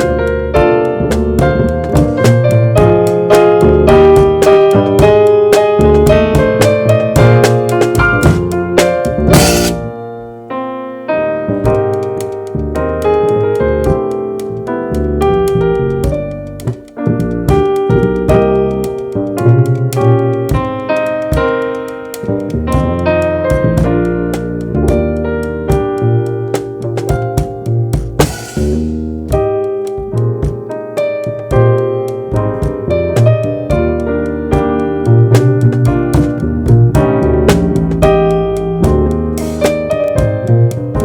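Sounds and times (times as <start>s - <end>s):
bass line: 0.0s - 10.0s, 11.5s - 21.6s, 22.2s - 41.0s
drum kit: 0.0s - 10.0s, 11.7s - 41.0s
jazz piano chords and melody: 0.0s - 41.0s
cymbal crash: 9.3s - 9.9s.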